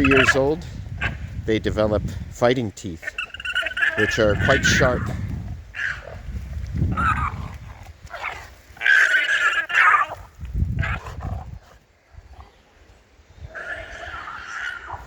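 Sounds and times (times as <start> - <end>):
alpacas screaming: 0.0 - 1.2, 3.0 - 6.2, 6.9 - 11.1, 13.5 - 15.0
low rumble of scuffling: 4.0 - 8.8.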